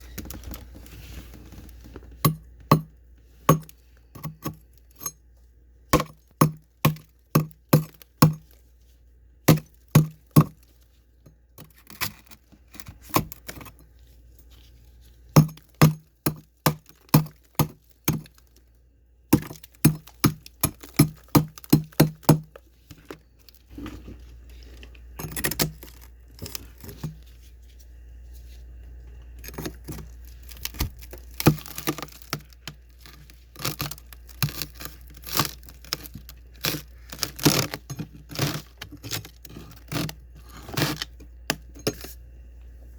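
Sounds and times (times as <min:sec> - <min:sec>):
ice scraping and crunching: 0:22.6 - 0:27.8, 0:29.4 - 0:41.2
freezer frost cracking: 0:29.2 - 0:41.1.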